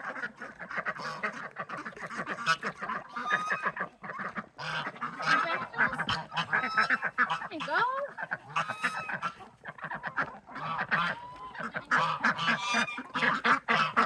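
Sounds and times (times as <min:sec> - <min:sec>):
poultry flock calling: 0:00.0 - 0:14.0.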